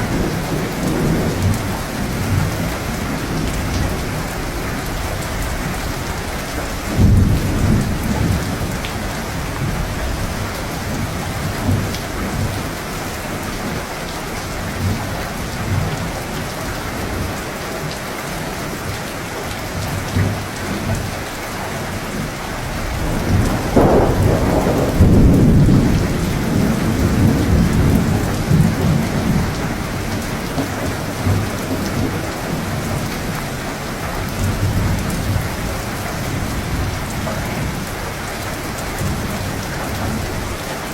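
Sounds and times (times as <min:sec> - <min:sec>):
rolling thunder: 0:00.0 - 0:17.4, 0:22.2 - 0:33.4
steady rain: 0:00.0 - 0:40.9.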